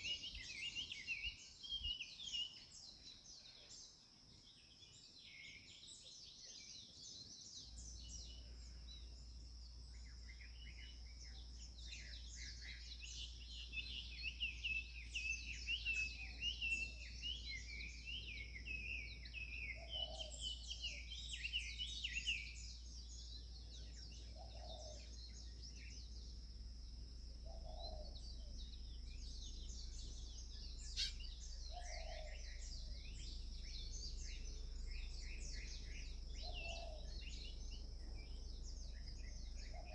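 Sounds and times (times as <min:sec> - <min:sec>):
birds chirping and twittering: 0:00.0 - 0:39.9
faint low hum: 0:06.1 - 0:39.9
low bird call: 0:27.1 - 0:39.9.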